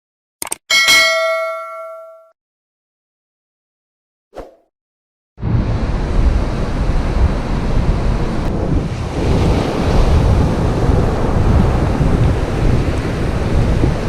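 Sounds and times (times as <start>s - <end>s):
strong wind buffeting microphone: 5.4s - 14.0s
surf breaking on beach: 5.4s - 14.0s.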